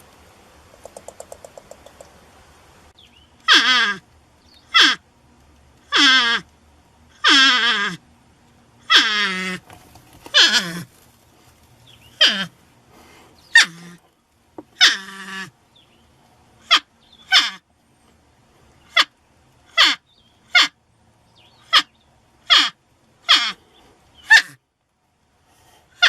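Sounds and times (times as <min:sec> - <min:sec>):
porcupine whining calls: 0:03.4 - 0:04.0, 0:04.6 - 0:05.0, 0:05.9 - 0:06.5, 0:07.2 - 0:08.0, 0:08.8 - 0:09.6, 0:10.2 - 0:10.9, 0:12.0 - 0:12.6, 0:13.4 - 0:14.1, 0:14.8 - 0:15.6, 0:16.6 - 0:17.6, 0:18.8 - 0:20.8, 0:21.5 - 0:24.6.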